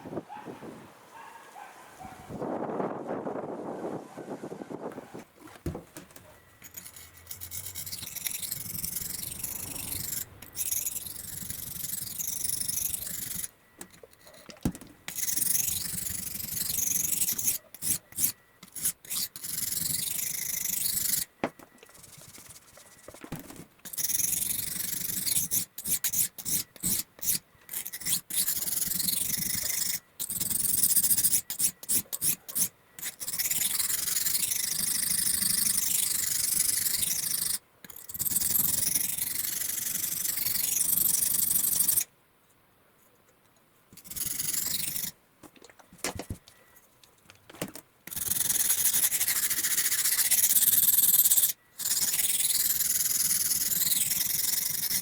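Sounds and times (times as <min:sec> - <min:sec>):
abrasive rubbing strokes: 0:06.2 - 0:14.5.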